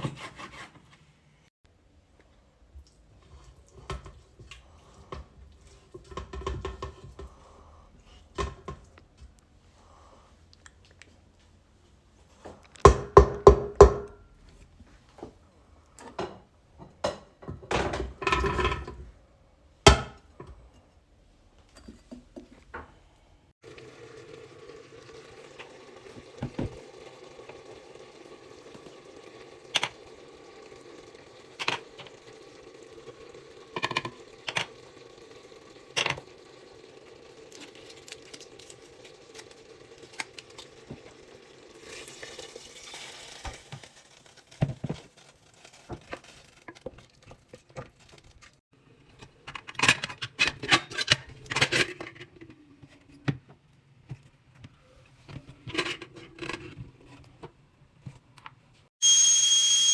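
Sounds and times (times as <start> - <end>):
kitchen utensils and dishes clinking: 16.0 - 19.1, 41.8 - 53.0.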